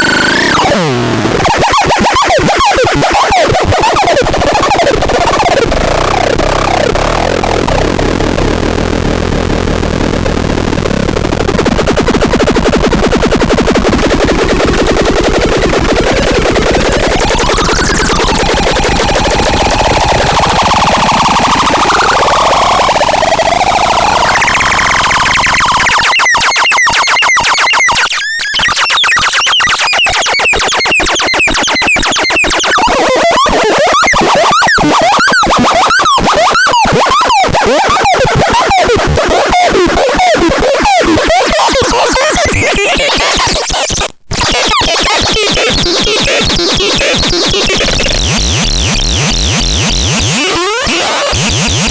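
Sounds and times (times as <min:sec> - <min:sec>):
chopped chirping synth pulses: 0:00.0 - 0:07.9, 0:13.1 - 0:32.9, 0:40.3 - 0:51.9
harsh synthesizer noise: 0:00.0 - 0:51.9.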